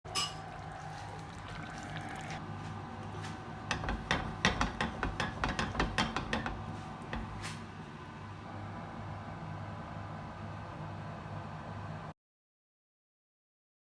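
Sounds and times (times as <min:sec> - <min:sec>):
sharp knocks: 0:03.7 - 0:07.6.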